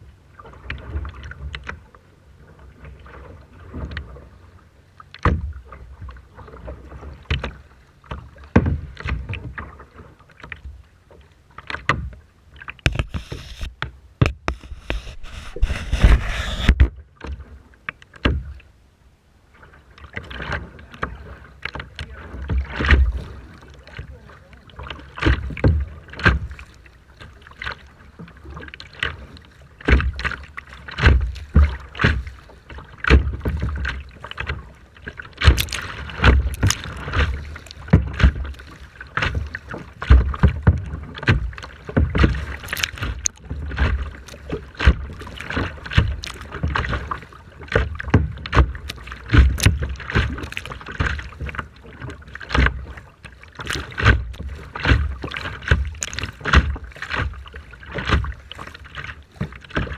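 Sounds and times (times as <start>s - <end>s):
sea water splashing: 0.0s - 18.7s, 19.5s - 59.9s.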